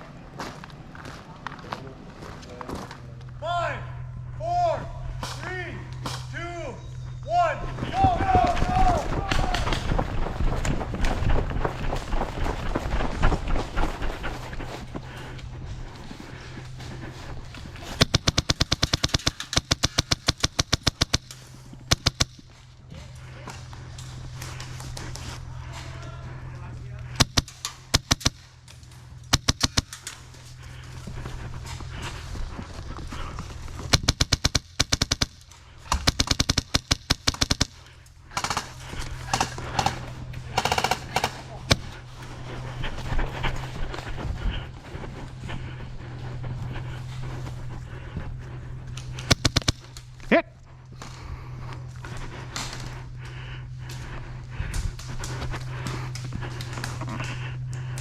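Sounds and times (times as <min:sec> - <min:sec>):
airsoft gun firing: 0:18.0 - 0:22.4, 0:27.2 - 0:28.5, 0:29.3 - 0:30.1, 0:33.9 - 0:39.9, 0:49.3 - 0:49.9.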